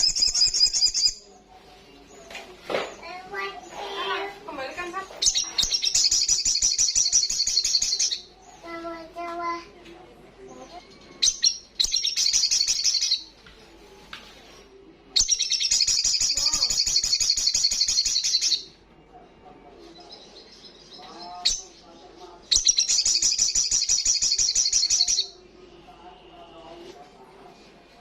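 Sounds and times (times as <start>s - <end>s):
bird singing rapid trill: 0.0s - 1.2s, 5.2s - 8.7s, 10.9s - 13.3s, 15.2s - 18.8s, 22.5s - 25.4s
faint bird chirps: 0.0s - 4.4s, 5.1s - 9.2s, 10.4s - 26.9s.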